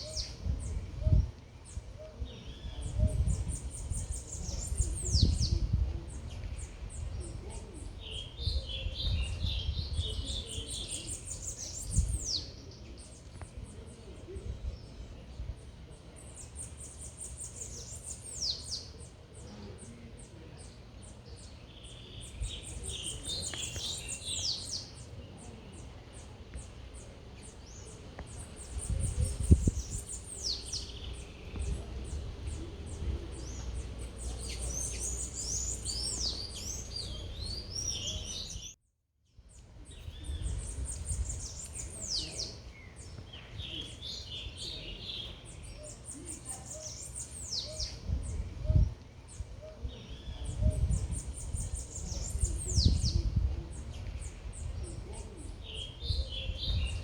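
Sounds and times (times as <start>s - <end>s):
low rumble of city noise: 0.0s - 38.8s
songbird singing: 0.0s - 57.0s.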